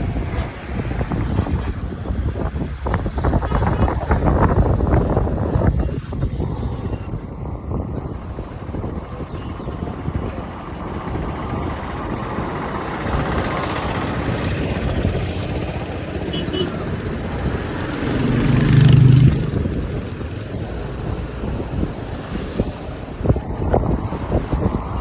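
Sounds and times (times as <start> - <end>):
traffic rumble: 0.0 - 25.0
wind: 0.0 - 25.0
motor vehicle passing close: 16.6 - 25.0.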